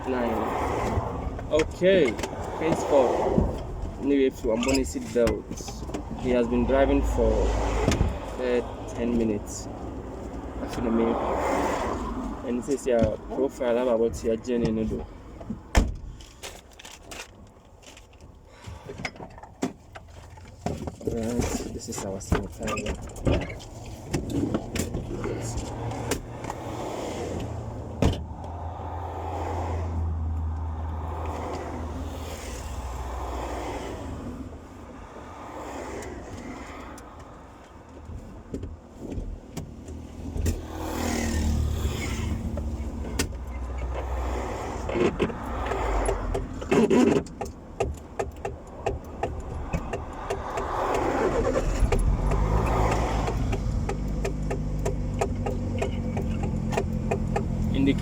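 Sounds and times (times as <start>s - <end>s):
road noise inside car: 0.0s - 58.0s.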